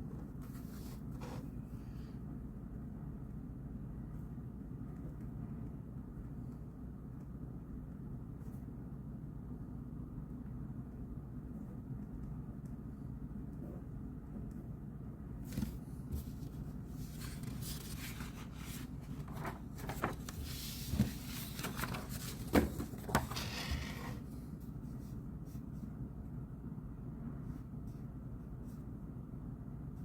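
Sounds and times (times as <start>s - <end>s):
steady low hum: 0.0s - 30.0s
rustling and rubbing: 15.5s - 24.3s.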